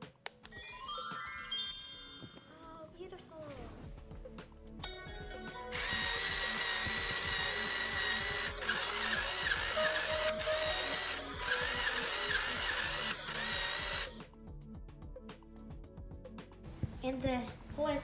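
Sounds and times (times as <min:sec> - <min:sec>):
tinny music from toy speaker: 0:04.8 - 0:14.2
small motor whirring: 0:05.7 - 0:14.2.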